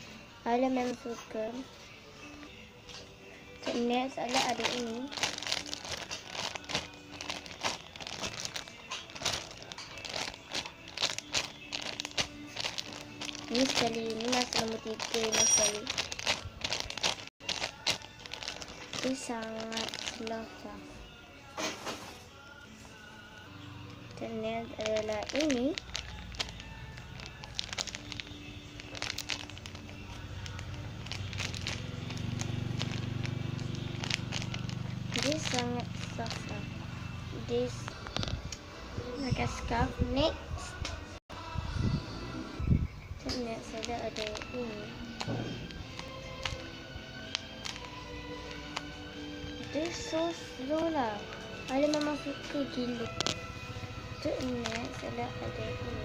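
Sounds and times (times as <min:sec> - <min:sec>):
squishy toy crinkling: 0:04.2 - 0:20.6, 0:24.6 - 0:36.6, 0:37.8 - 0:38.4, 0:43.7 - 0:49.0, 0:49.6 - 0:55.6.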